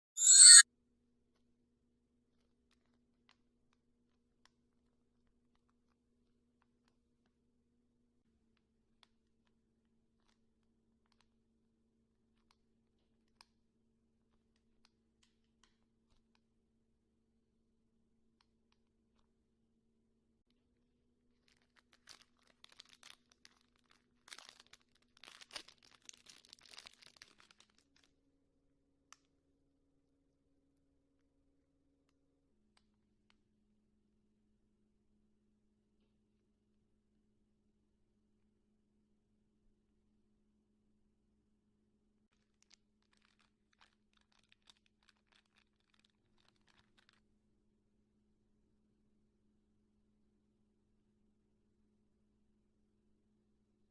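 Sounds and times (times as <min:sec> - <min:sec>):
slime crackling and popping: 0:21.5 - 0:28.0.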